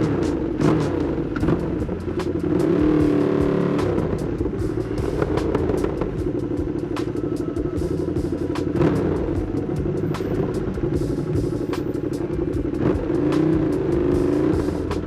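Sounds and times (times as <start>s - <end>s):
motorcycle engine running: 0.0s - 15.0s.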